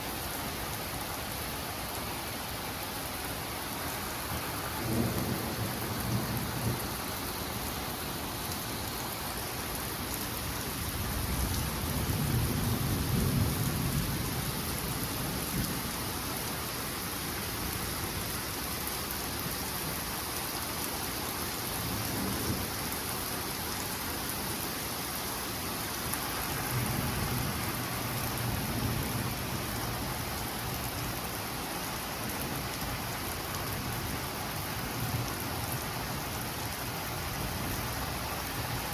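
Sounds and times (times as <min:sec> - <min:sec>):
heavy rain: 0:00.0 - 0:38.9
thunder rumbling: 0:04.7 - 0:07.1.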